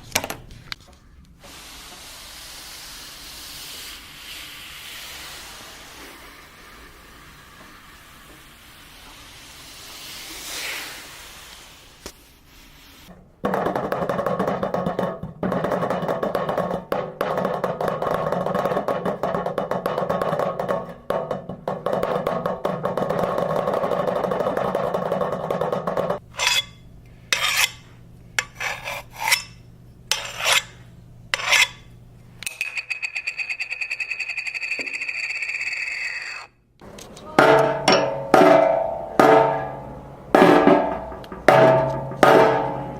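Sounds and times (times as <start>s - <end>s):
hollow pitched knocks: 37.4s - 42.9s.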